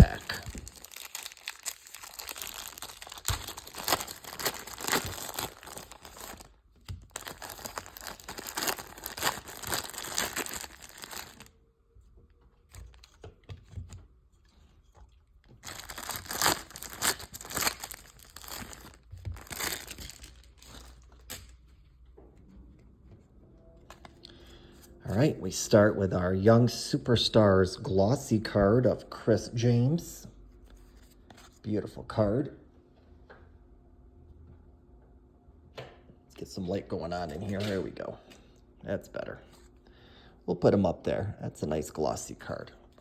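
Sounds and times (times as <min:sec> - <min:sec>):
plastic wrapper tearing and crinkling: 0:00.0 - 0:11.5, 0:15.5 - 0:21.5.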